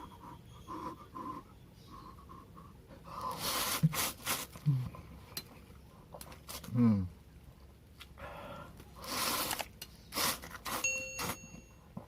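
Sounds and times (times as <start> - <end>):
person slurping noodle soup: 9.0 - 10.8.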